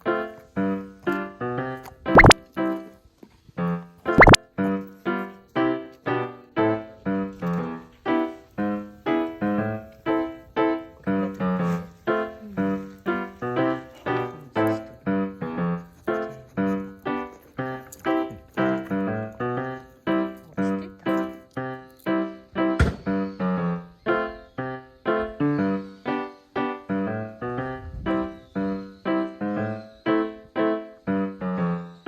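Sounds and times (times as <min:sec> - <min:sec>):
light bouncy keyboard music: 0:03.6 - 0:20.9.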